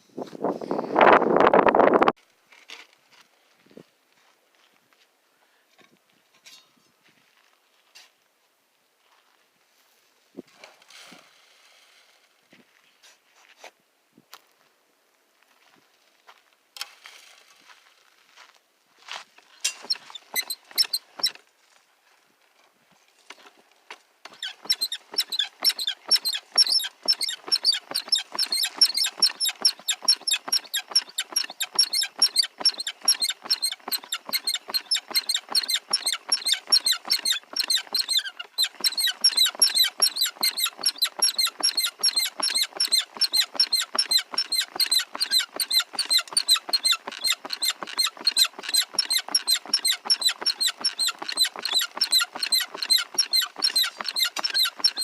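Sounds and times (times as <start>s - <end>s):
gravel rattling over dry washer tray: 24.3s - 55.0s.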